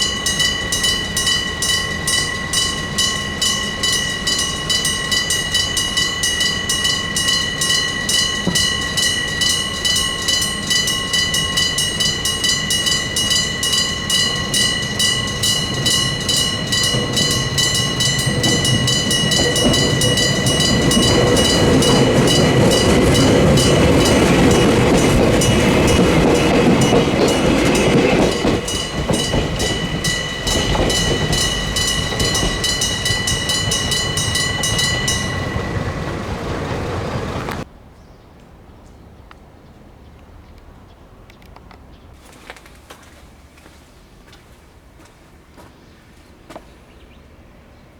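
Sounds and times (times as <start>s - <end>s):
level crossing bell ringing: 0.0s - 37.6s
train passing: 0.0s - 37.8s.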